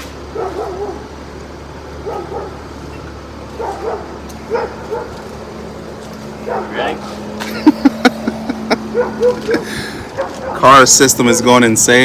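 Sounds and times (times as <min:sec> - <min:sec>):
low hum: 0:04.4 - 0:10.2.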